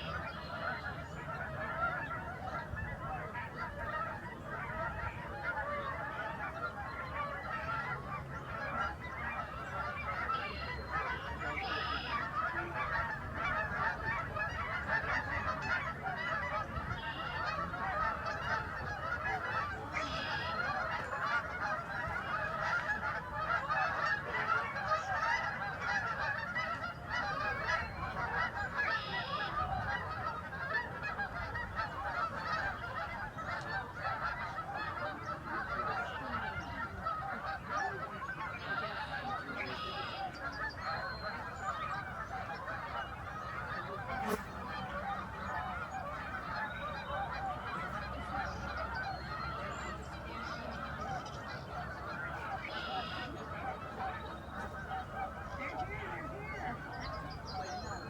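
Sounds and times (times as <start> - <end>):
geese honking: 0.0 - 58.0.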